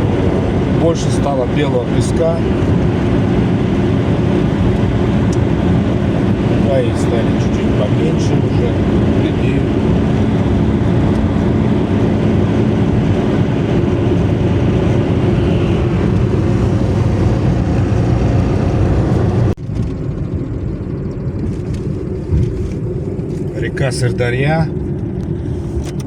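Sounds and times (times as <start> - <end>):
car driving on highway: 0.0 - 26.0.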